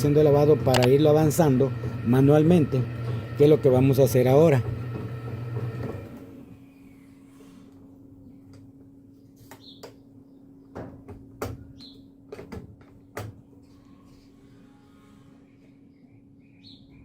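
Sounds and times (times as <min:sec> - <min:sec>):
timer knob clicking: 0:00.7 - 0:01.0.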